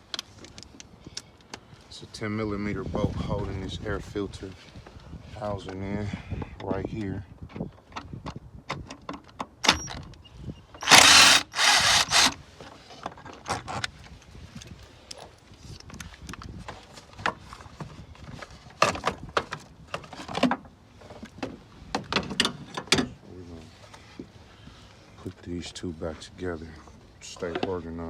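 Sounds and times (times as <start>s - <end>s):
power tool bursts: 10.8s - 12.4s.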